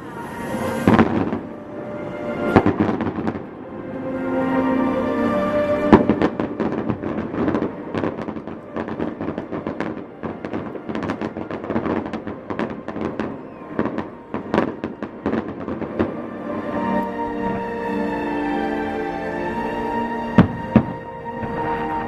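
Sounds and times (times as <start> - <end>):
fireworks crackling and banging: 0.0 - 4.2, 5.8 - 17.7, 20.4 - 22.0.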